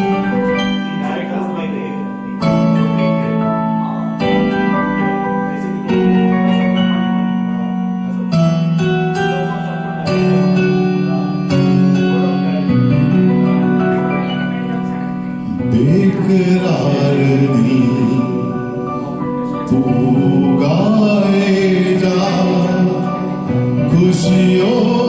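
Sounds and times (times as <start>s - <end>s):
sustained keyboard chords: 0.0s - 25.0s
person singing: 13.9s - 25.0s.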